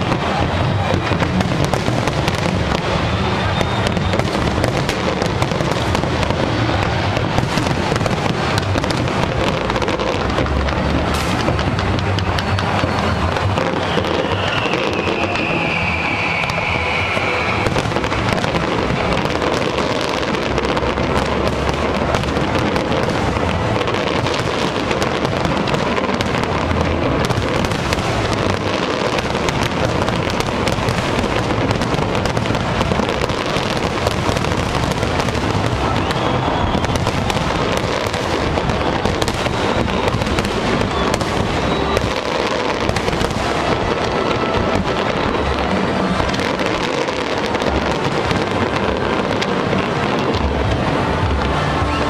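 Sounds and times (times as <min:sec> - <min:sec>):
fireworks banging and crackling: 0:00.0 - 0:52.0
high whistle: 0:03.0 - 0:05.1, 0:12.4 - 0:18.9, 0:35.6 - 0:45.8.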